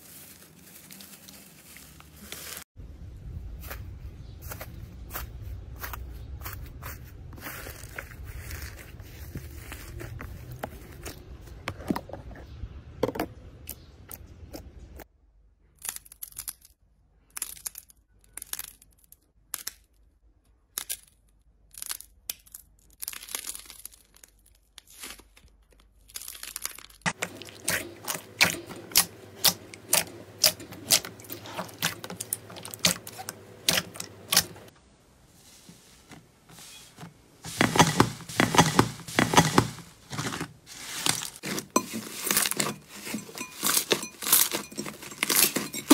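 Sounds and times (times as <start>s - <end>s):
slime crackling and crunching: 22.9s - 34.5s, 37.5s - 45.9s.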